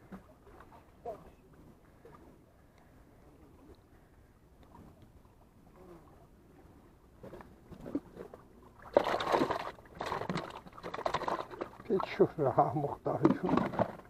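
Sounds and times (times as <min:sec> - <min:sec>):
sea water lapping on rocks: 0:06.6 - 0:14.0.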